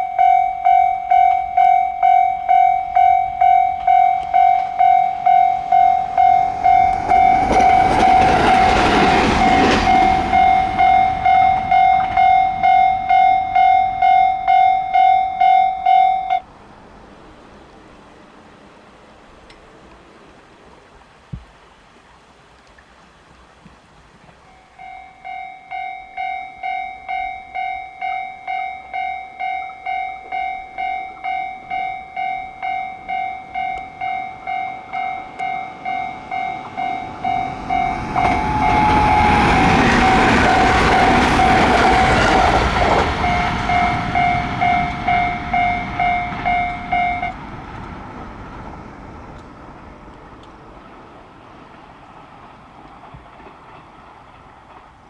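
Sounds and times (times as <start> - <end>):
level-crossing warning bell: 0.0 - 17.3, 24.4 - 50.9
train passing: 0.0 - 21.7, 24.3 - 55.0.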